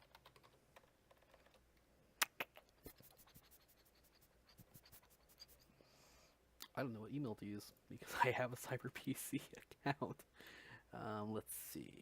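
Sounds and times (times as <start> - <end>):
computer keyboard typing: 0.0 - 1.6.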